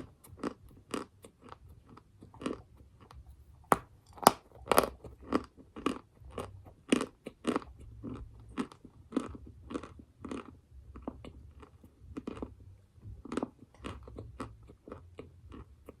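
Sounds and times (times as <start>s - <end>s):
person chewing and crunching chalk: 0.0s - 16.0s.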